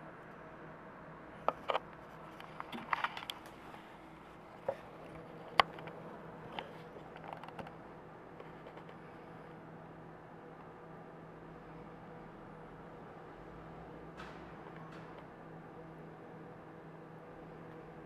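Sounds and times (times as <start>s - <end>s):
cooling fans humming: 0.0s - 18.0s.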